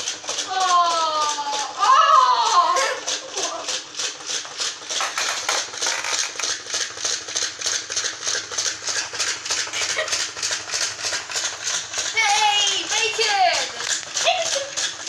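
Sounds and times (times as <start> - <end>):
toy motor clicking: 0.0 - 15.0.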